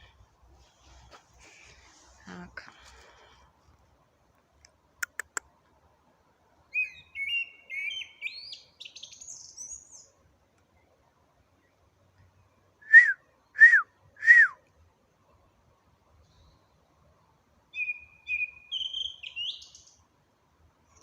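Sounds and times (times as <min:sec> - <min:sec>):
songbird singing: 0:06.5 - 0:15.6, 0:16.2 - 0:20.2.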